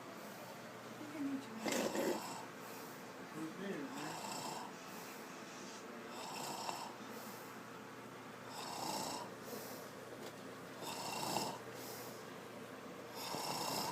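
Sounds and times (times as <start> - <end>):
rasping snores: 1.6 - 2.4, 4.0 - 4.7, 6.1 - 7.0, 8.5 - 9.3, 10.8 - 11.6, 13.2 - 13.9.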